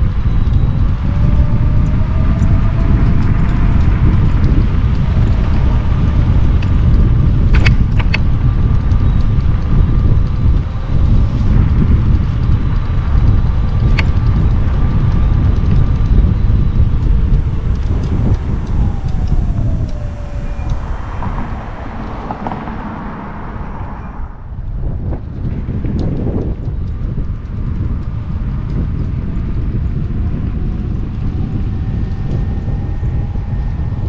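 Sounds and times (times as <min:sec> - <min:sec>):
electric scooter motor whine: 0:00.0 - 0:34.0
wind rumble on microphone: 0:00.0 - 0:34.0.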